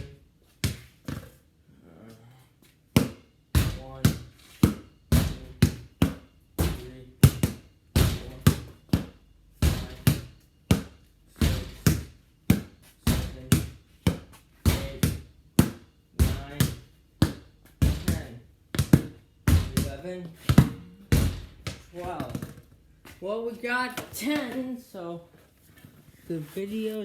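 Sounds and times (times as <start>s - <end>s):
ball bouncing off garage door: 0.0s - 1.4s, 2.9s - 22.9s.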